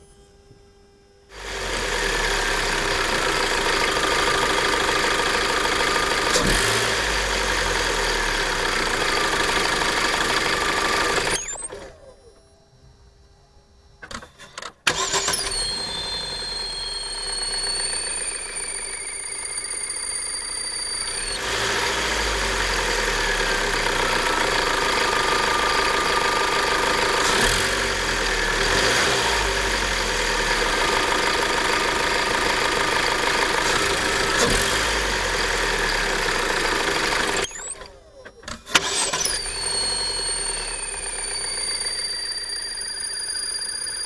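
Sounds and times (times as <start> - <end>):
car engine running: 1.6 - 11.6, 14.9 - 37.7
high thin whistle: 15.3 - 21.4, 39.2 - 44.0.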